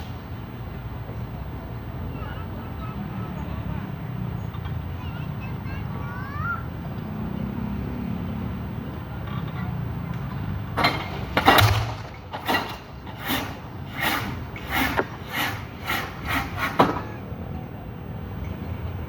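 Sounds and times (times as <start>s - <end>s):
excavator engine rumbling: 0.0s - 19.0s
bucket knocking concrete piles: 10.8s - 17.1s.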